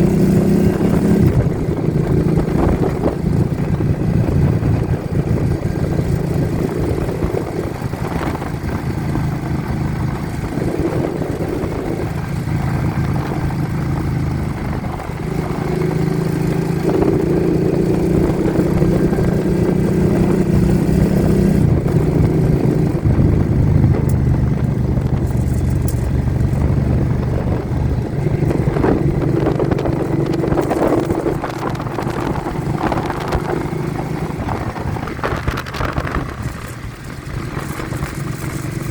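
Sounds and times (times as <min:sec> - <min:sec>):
vehicle engine running: 0:00.0 - 0:38.9
wind buffeting microphone: 0:00.0 - 0:38.9.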